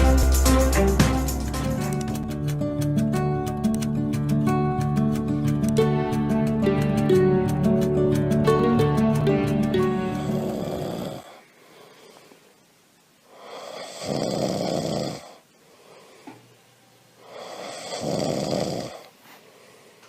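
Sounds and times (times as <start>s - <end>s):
person snoring: 10.1s - 12.2s, 13.3s - 16.3s, 17.2s - 19.1s
quiet breathing: 10.2s - 20.0s.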